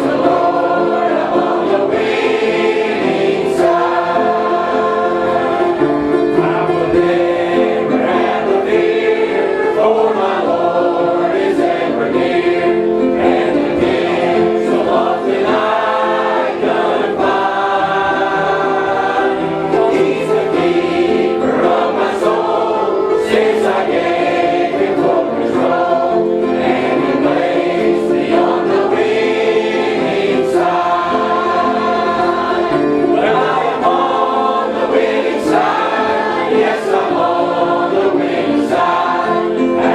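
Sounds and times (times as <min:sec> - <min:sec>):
choir singing gospel song: 0:00.0 - 0:39.9.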